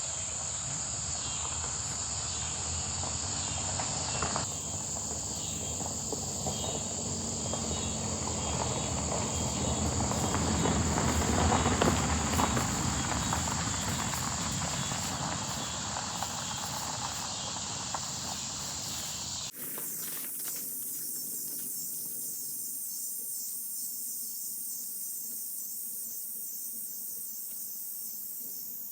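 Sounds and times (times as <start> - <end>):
crickets chirping: 0.0 - 28.9
rustling movement through garden: 4.4 - 21.8.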